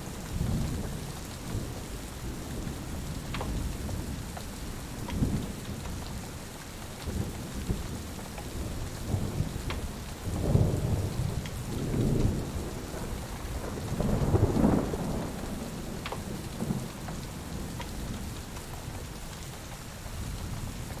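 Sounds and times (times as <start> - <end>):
steady rain: 0.0 - 21.0
thunder rumbling: 8.6 - 18.3.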